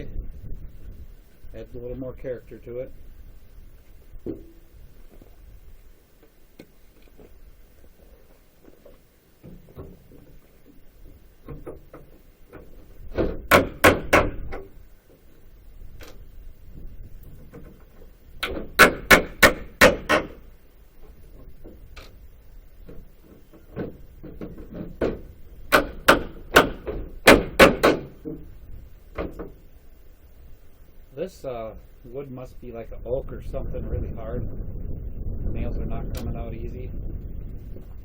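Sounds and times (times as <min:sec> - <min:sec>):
hammer striking wooden pallet: 0:12.6 - 0:14.7, 0:18.4 - 0:20.4, 0:23.7 - 0:28.4.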